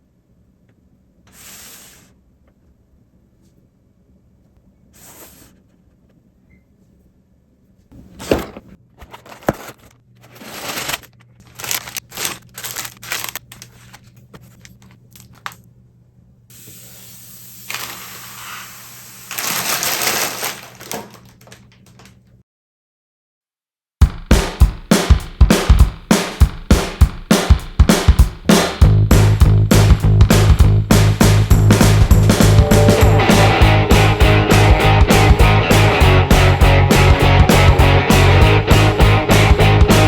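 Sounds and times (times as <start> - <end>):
cardboard tearing: 8.2 - 13.9, 19.3 - 21.4
plastic bags crinkling: 9.0 - 15.5, 19.3 - 22.2.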